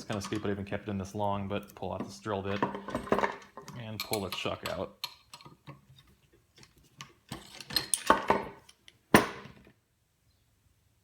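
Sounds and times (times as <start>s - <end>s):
metal clinks and knocks: 0.0s - 0.6s, 2.0s - 5.8s, 7.0s - 9.6s.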